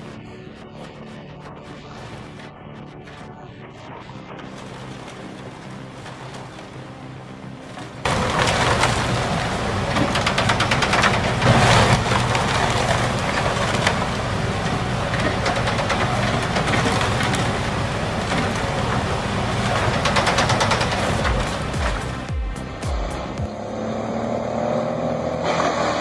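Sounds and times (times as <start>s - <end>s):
wood chipper drone: 4.0s - 26.0s
wood cracking and splintering: 4.4s - 22.3s.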